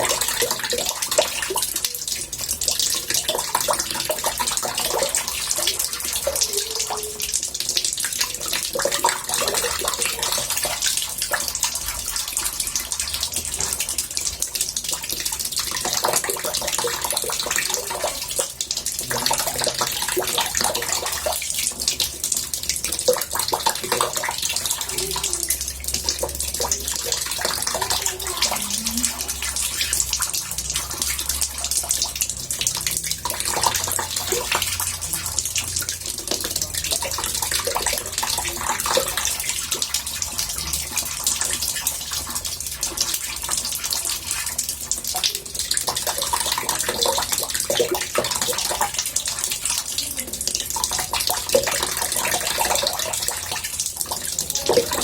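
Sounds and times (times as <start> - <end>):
water running into a bathtub: 0.0 - 55.0
water gurgling and bubbling: 22.9 - 36.2.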